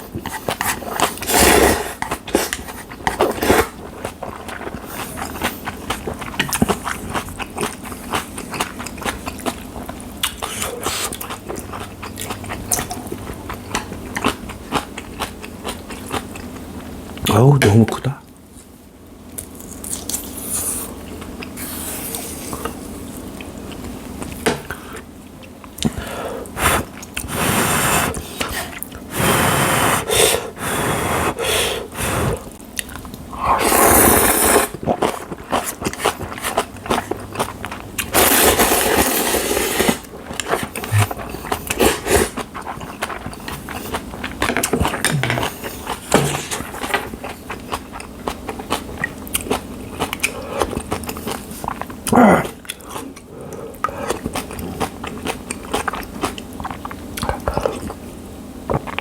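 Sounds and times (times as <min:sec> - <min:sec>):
chewing with crunching and smacking: 0:00.0 - 0:27.3, 0:32.4 - 0:59.0
loud noodle slurps: 0:00.7 - 0:03.8, 0:26.6 - 0:32.4, 0:33.4 - 0:36.6, 0:38.1 - 0:42.8.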